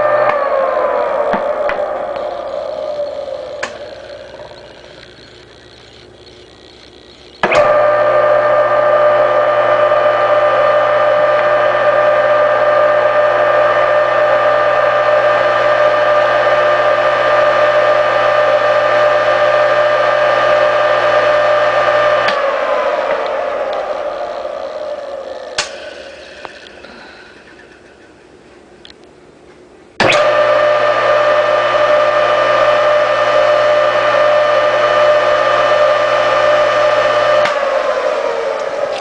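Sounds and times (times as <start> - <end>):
electric motor humming and whining: 0.0 - 28.1, 30.0 - 39.0
motor switch click: 1.3 - 8.2, 23.0 - 26.8.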